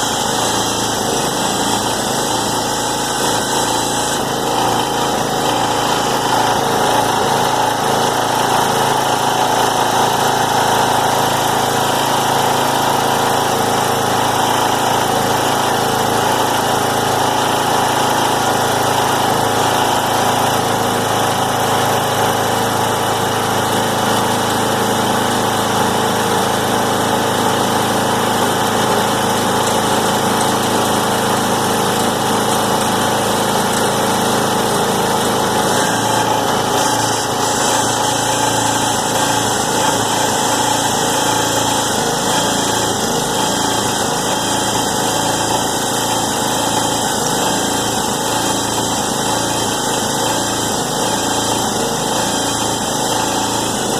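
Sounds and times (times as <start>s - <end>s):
small gasoline engine running: 0.0s - 53.9s.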